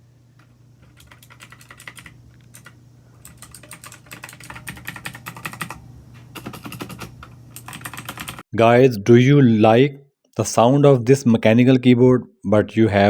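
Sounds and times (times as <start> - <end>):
faint low hum: 0.0 - 13.0
typing on mechanical keyboard: 0.4 - 5.8, 6.4 - 8.4.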